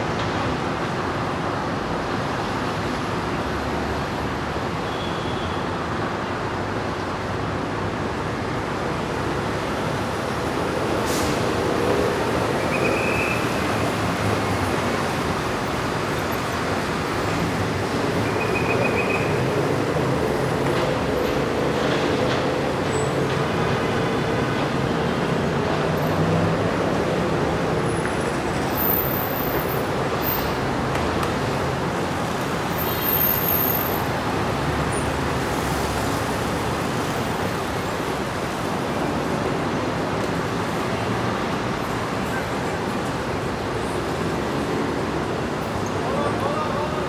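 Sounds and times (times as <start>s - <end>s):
heavy street traffic: 0.0s - 47.0s.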